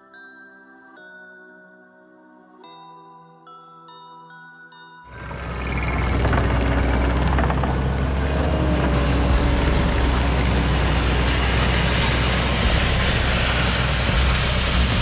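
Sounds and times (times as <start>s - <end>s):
diesel engine running loudly: 5.1s - 15.0s.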